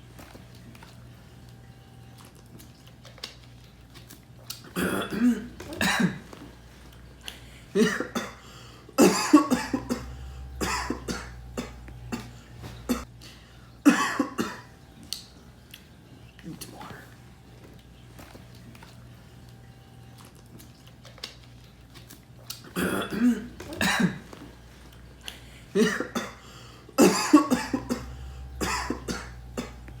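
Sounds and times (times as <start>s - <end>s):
person fake-coughing: 4.7s - 6.4s, 7.7s - 13.1s, 13.8s - 14.7s, 22.7s - 24.4s, 25.7s - 29.9s.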